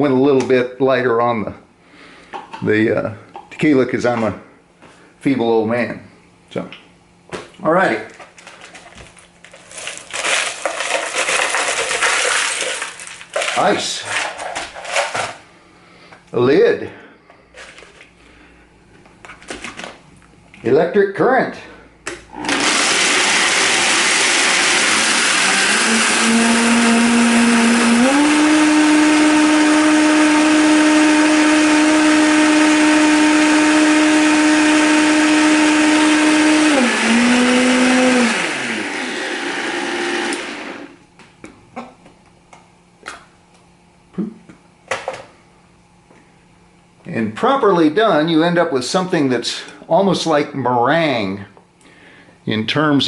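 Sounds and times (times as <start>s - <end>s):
blender crushing ice: 8.4s - 15.4s, 22.3s - 41.0s.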